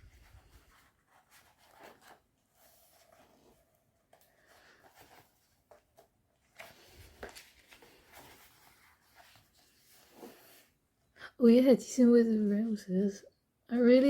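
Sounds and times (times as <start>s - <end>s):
book pages rustling: 0.0s - 10.8s.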